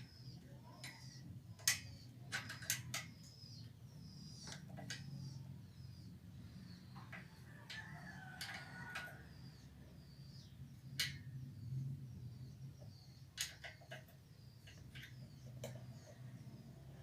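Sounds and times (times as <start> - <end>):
faint bird chirps: 0.0 - 17.0
clicks and knocks of tools: 0.8 - 3.4, 4.4 - 5.4, 7.0 - 9.4, 11.0 - 11.3, 12.8 - 16.2.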